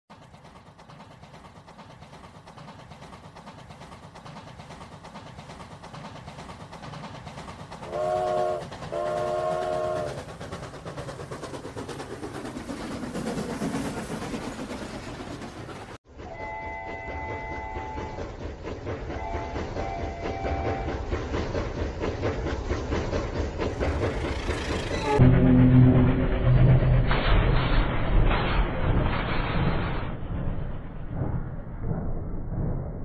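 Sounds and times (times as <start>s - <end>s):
train rumbling: 0.1s - 33.0s
train horn blasts: 7.9s - 10.2s, 16.2s - 18.2s, 19.2s - 20.9s, 25.0s - 26.6s.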